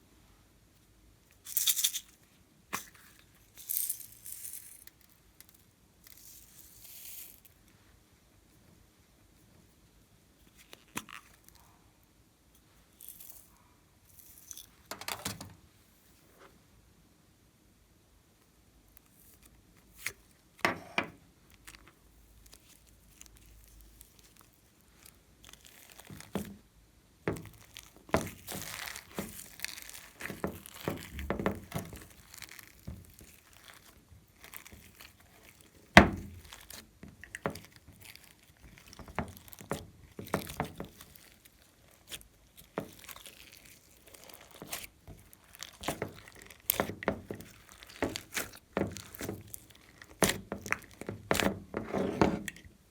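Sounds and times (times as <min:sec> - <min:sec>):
slime crackling and squishing: 0:21.5 - 0:52.9.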